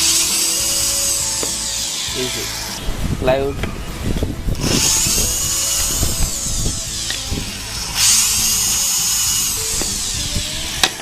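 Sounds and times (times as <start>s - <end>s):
power drill drilling into wood: 0.0s - 2.8s, 4.6s - 11.0s.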